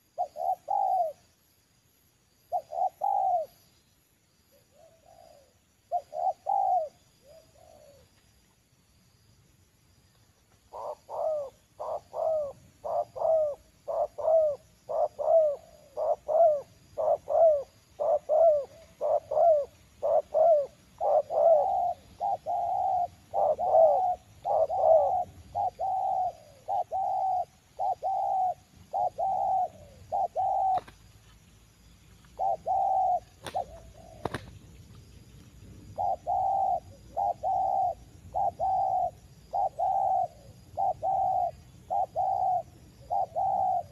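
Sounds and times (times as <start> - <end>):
dove cooing: 0.0 - 1.3, 2.5 - 3.7, 4.5 - 8.2, 10.7 - 31.1, 32.3 - 34.6, 35.8 - 43.9.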